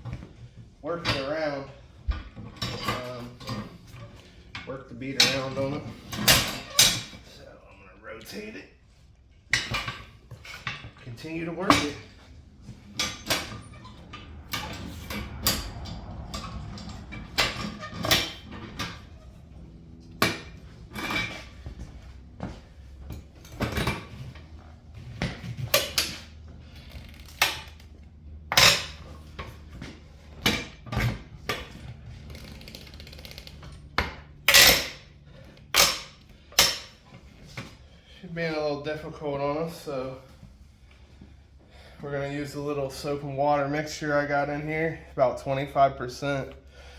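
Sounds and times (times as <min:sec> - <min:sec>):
metal clanks and knocks: 0:01.0 - 0:07.4, 0:09.5 - 0:37.8
creaking: 0:09.6 - 0:37.0.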